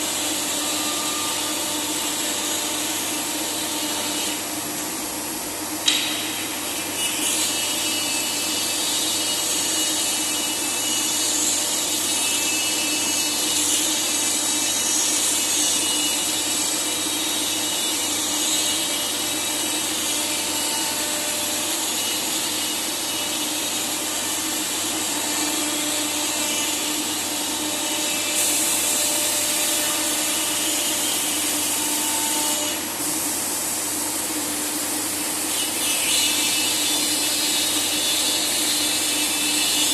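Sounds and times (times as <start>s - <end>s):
sharp click: 5.8s - 6.2s
router milling wood: 7.5s - 33.0s.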